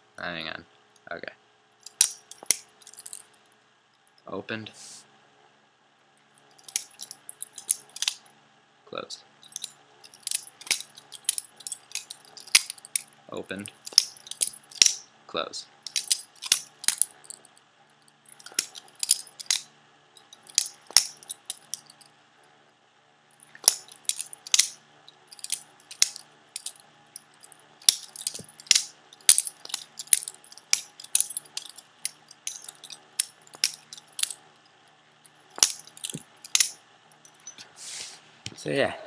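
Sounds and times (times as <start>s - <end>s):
butterfly knife handles clacking: 1.8s - 3.2s, 6.5s - 8.2s, 9.4s - 13.0s, 13.7s - 15.0s, 15.9s - 17.4s, 18.3s - 22.0s, 23.4s - 34.4s, 35.5s - 37.6s.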